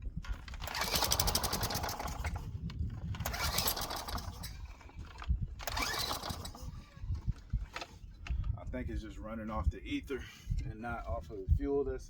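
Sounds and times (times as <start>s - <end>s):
small engine sputtering: 0.3s - 7.8s.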